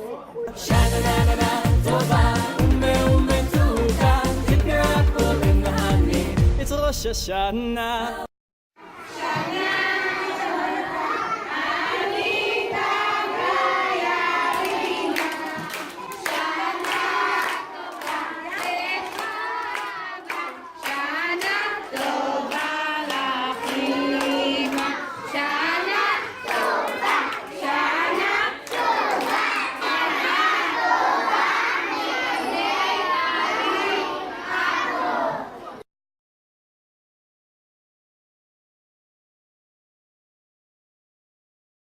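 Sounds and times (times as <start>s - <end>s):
children singing: 0.7s - 6.4s, 8.9s - 35.6s.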